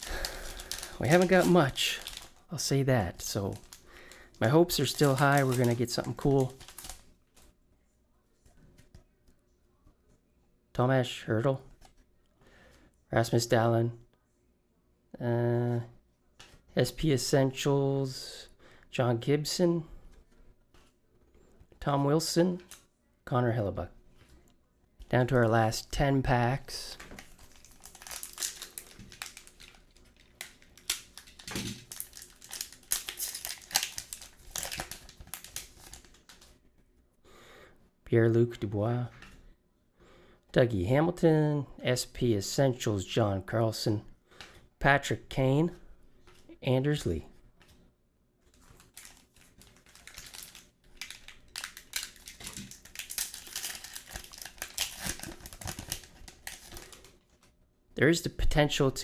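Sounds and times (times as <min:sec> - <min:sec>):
plastic wrapper crinkling: 0:00.0 - 0:07.4, 0:26.9 - 0:36.5, 0:48.5 - 0:57.5.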